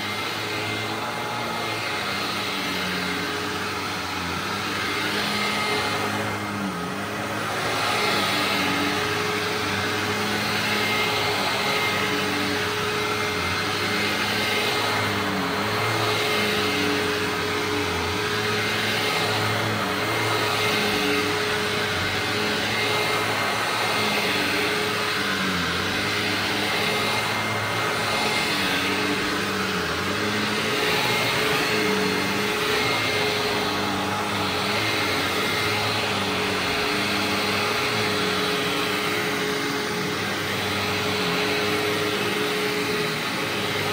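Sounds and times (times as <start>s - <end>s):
vacuum cleaner motor whine: 0.0s - 43.9s.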